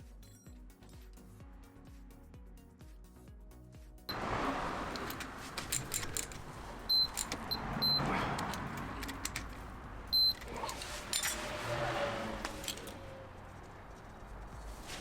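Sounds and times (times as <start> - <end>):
background music: 0.0 - 15.0
car mechanical running noise: 4.1 - 15.0
clicks: 4.9 - 11.4
short electronic beeps: 6.9 - 8.1, 10.1 - 10.4.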